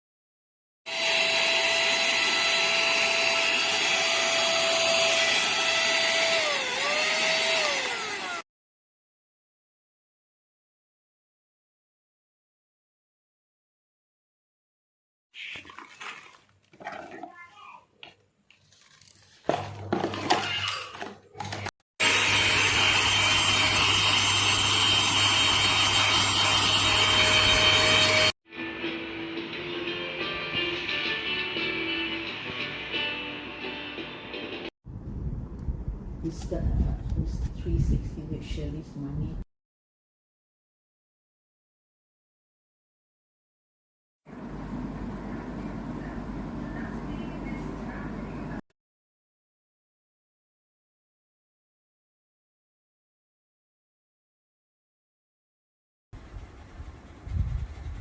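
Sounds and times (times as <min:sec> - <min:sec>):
small electric motor whining: 0:00.9 - 0:08.4, 0:22.0 - 0:28.4.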